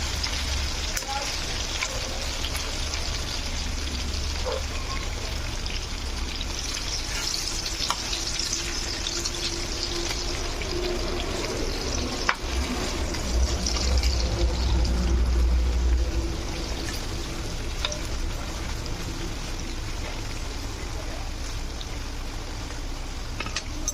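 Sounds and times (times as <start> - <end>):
chicken deep-frying in oil: 0.0 - 23.9
low rumble: 9.1 - 21.1.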